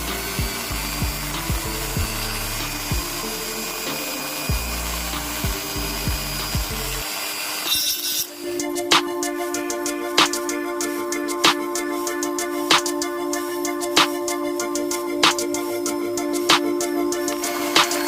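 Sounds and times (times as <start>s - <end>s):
background music with low bass: 0.0s - 7.1s, 8.2s - 18.0s
mini grinder whirring: 0.0s - 8.9s, 15.9s - 18.0s.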